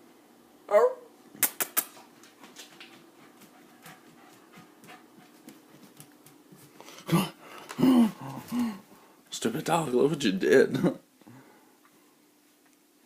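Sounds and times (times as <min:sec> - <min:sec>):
dog panting: 0:02.6 - 0:06.6.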